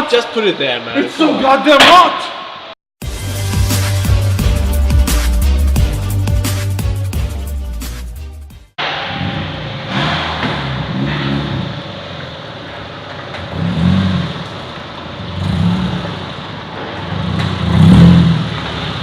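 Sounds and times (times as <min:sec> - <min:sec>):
car engine revving: 0:08.8 - 0:19.0.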